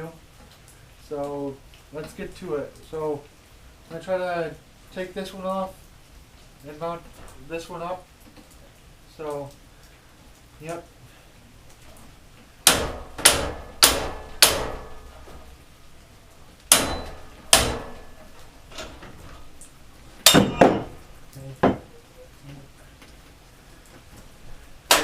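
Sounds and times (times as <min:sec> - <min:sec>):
hammer striking metal: 0:12.6 - 0:15.2, 0:16.7 - 0:18.2, 0:20.2 - 0:21.0.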